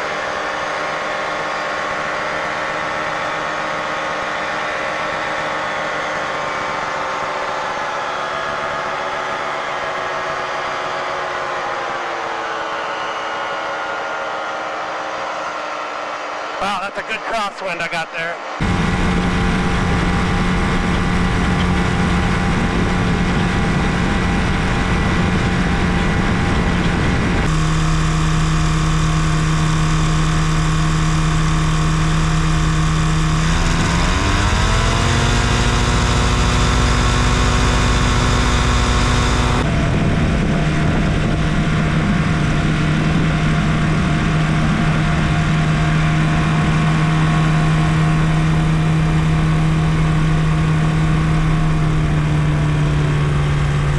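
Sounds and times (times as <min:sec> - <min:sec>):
two-stroke aircraft engine running: 0:00.0 - 0:53.9.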